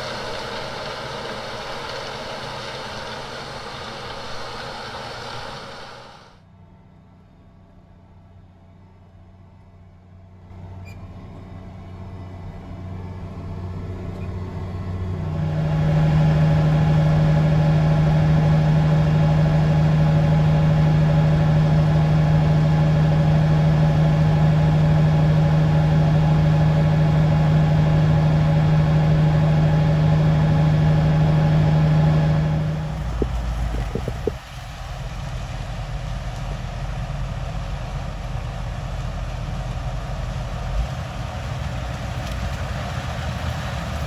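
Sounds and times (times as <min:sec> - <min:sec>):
engine running at high speed: 0:00.0 - 0:06.4, 0:12.4 - 0:34.4.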